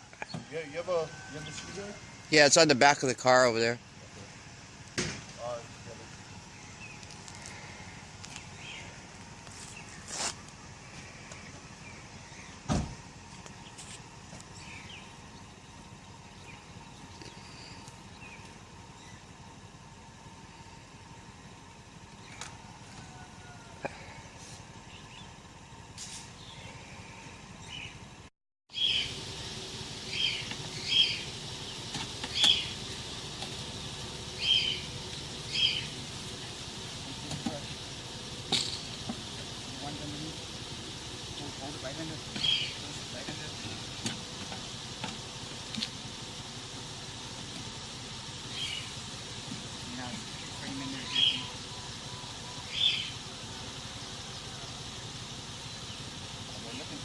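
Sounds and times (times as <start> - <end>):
heavy thump: 5.0 - 5.4, 12.7 - 13.0
bird chirping: 6.5 - 9.0, 14.5 - 19.3, 28.7 - 33.0, 34.0 - 37.7, 38.4 - 44.0, 48.5 - 49.0, 50.1 - 53.2.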